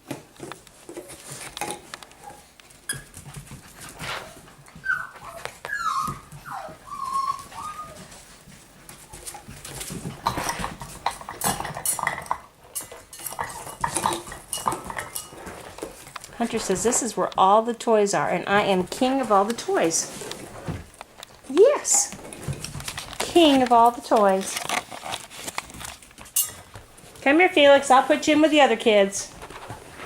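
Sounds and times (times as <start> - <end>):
puppy whimpering: 4.1 - 8.2.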